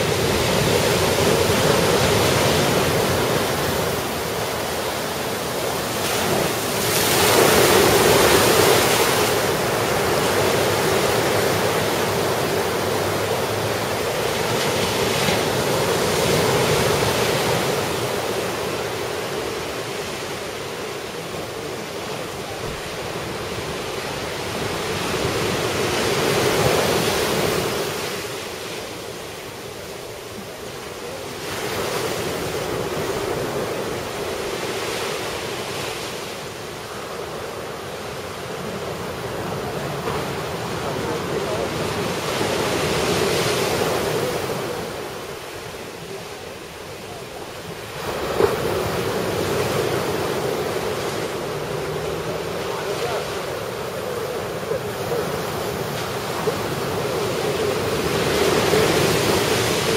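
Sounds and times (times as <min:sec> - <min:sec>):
ocean waves breaking: 0:00.0 - 0:59.9.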